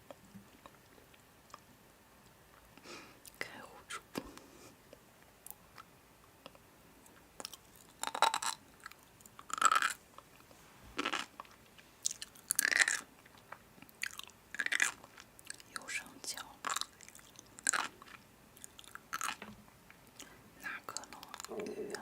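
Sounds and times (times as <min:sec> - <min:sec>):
person chewing crunchy food: 0:07.4 - 0:10.4, 0:11.0 - 0:15.7, 0:16.6 - 0:19.4.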